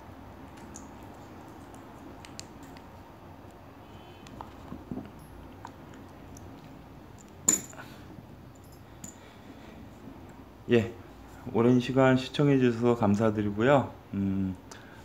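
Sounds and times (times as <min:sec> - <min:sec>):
faint clicks and rustles: 0:00.4 - 0:09.4.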